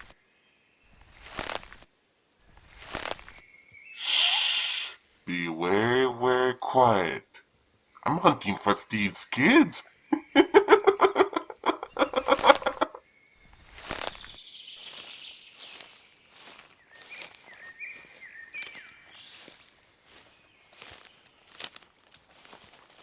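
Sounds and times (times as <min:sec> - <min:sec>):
birdsong chirps: 0:11.7 - 0:21.4.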